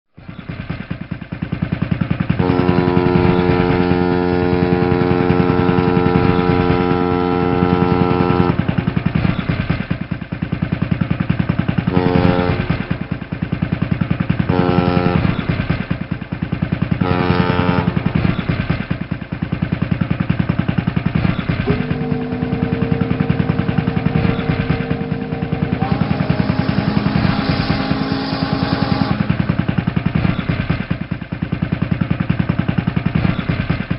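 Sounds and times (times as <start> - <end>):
boat engine running: 0.2 - 33.9
horn blasts: 2.4 - 9.4, 11.8 - 13.6, 14.4 - 16.0, 17.0 - 18.5, 21.0 - 30.6.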